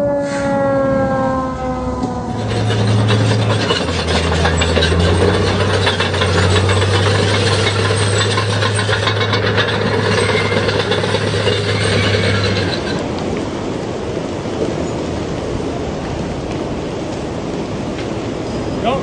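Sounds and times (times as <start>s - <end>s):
vehicle engine droning: 0.0s - 13.8s
rough crackling noise: 0.0s - 17.3s.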